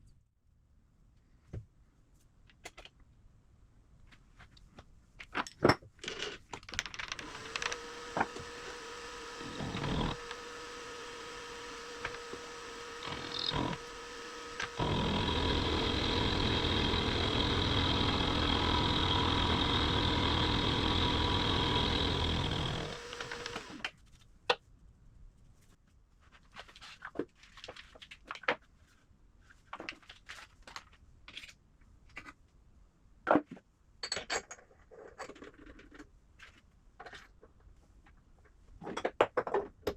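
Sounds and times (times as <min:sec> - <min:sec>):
cutting noise: 0:07.2 - 0:23.9
machine tool motor running: 0:07.2 - 0:23.9.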